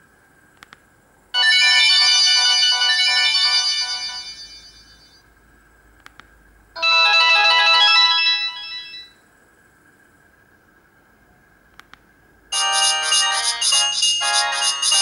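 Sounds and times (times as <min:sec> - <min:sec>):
phone ringtone melody: 0:01.4 - 0:05.1, 0:06.8 - 0:09.1, 0:12.5 - 0:15.0.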